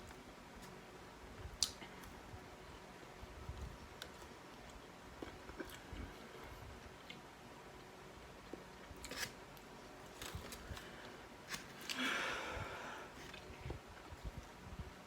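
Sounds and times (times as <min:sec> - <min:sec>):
faint chewing: 0:04.0 - 0:07.2.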